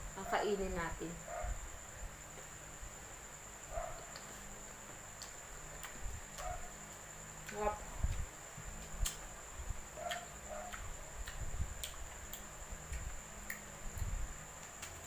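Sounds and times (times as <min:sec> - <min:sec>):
crunchy chewing of mango: 0:03.7 - 0:15.0.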